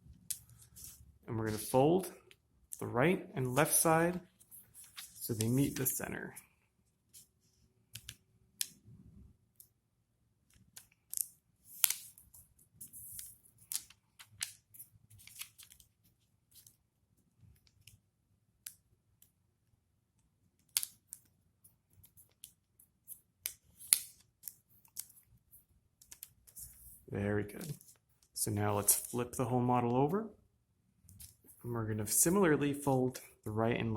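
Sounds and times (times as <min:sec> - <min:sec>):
paper rustling and creasing: 0:03.5 - 0:06.1.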